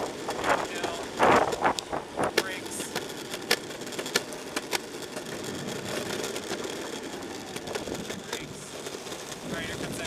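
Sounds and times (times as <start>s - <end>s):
skateboard wheels rolling on asphalt: 0.0s - 10.0s.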